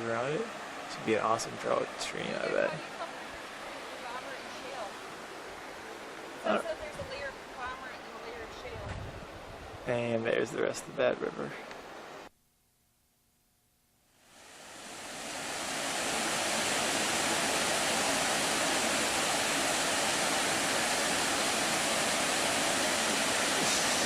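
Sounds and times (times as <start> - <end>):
river water pouring over waterfall: 0.0 - 8.8, 14.3 - 24.0.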